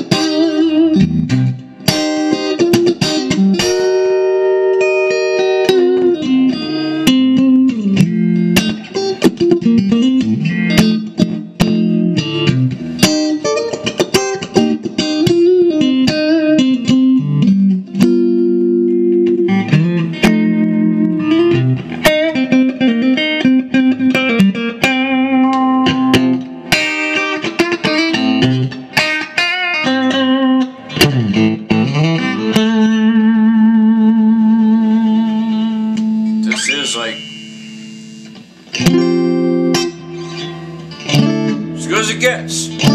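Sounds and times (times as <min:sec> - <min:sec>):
electric guitar through amplifier: 0:00.0 - 0:42.9.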